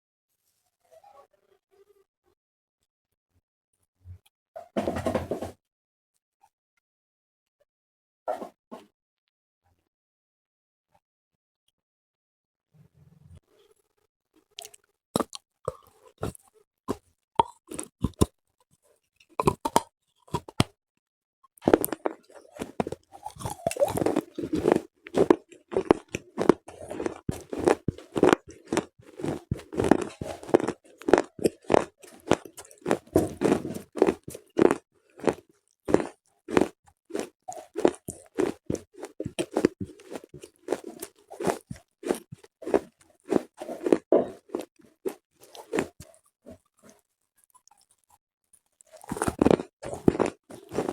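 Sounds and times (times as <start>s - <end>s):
crunchy chewing: 14.5s - 18.3s, 19.2s - 20.7s, 21.6s - 50.9s.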